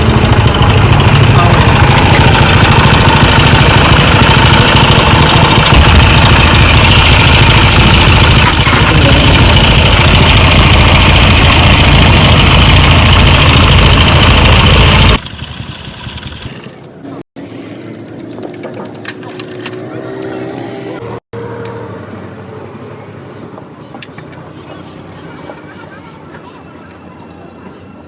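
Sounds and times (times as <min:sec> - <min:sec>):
motorcycle engine idling: 0:00.0 - 0:16.9.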